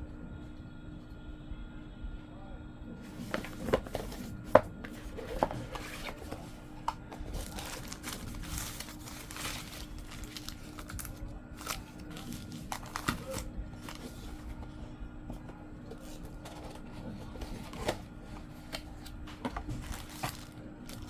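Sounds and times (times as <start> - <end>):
plastic wrap crinkling: 3.1 - 14.5, 18.6 - 21.0.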